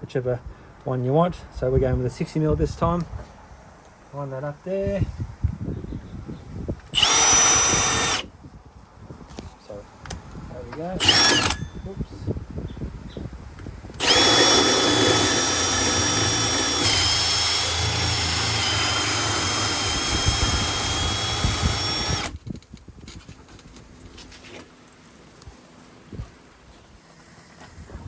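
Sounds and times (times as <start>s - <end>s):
power drill boring through wood: 7.0s - 8.3s, 11.0s - 11.7s, 14.0s - 22.4s.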